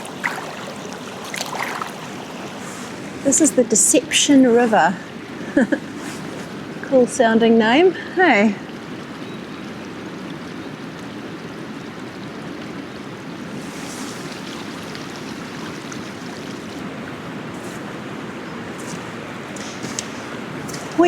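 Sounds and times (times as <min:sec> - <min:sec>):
river rushing: 0:00.0 - 0:07.2, 0:13.4 - 0:21.0.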